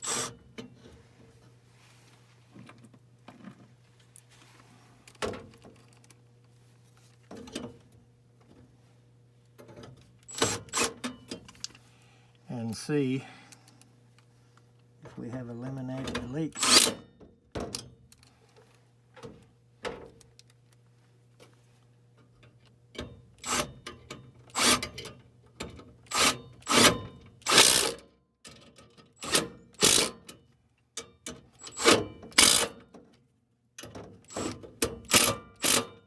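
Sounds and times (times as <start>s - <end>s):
furnace humming: 0.0s - 17.2s.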